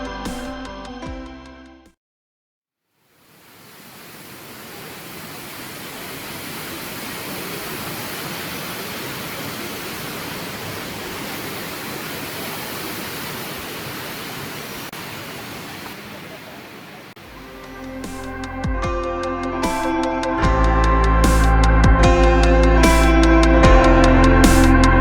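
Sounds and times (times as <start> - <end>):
waterfall roaring: 3.2 - 17.4.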